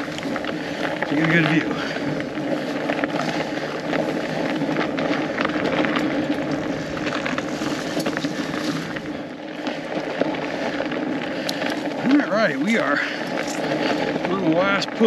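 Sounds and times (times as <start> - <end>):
bike clicks and rattles over bumps: 0.0 - 15.0
bike tire hum on frozen trail: 0.0 - 15.0.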